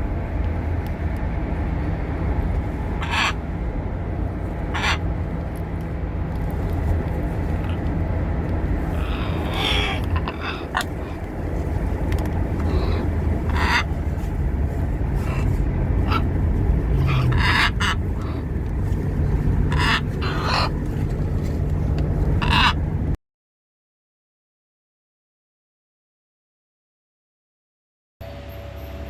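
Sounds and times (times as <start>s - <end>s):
steady low rumble: 0.0s - 23.2s
parrot calls: 2.8s - 3.5s, 4.6s - 5.2s, 8.7s - 14.3s, 15.0s - 23.0s.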